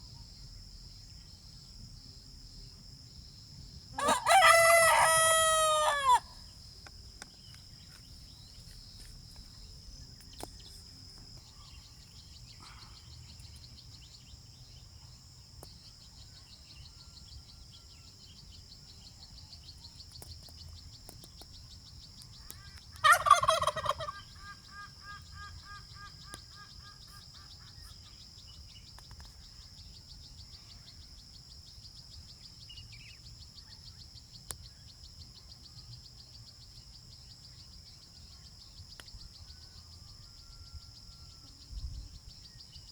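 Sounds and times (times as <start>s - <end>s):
high insect buzz: 0.4s - 42.9s
turkey gobbling: 4.0s - 6.2s, 23.0s - 26.1s.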